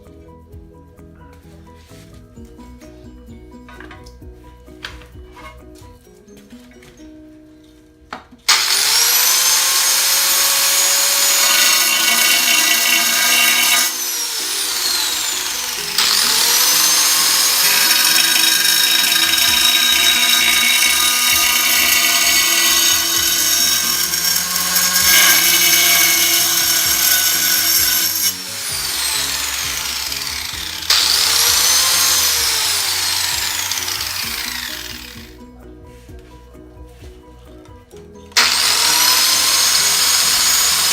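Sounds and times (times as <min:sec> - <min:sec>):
angle grinder cutting tile: 0:08.5 - 0:35.4, 0:38.4 - 0:40.9.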